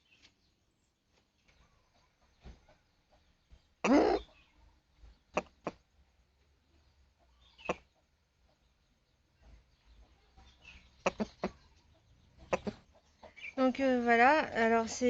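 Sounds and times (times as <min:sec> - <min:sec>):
rooster clucking: 0:03.8 - 0:04.4, 0:05.3 - 0:05.9, 0:11.0 - 0:13.5.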